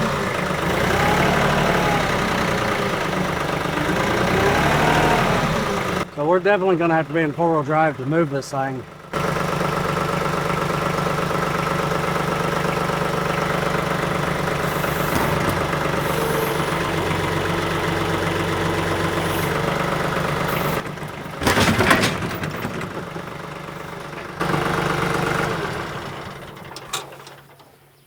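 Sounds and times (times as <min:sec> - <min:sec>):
tractor diesel engine running: 0:00.0 - 0:28.0.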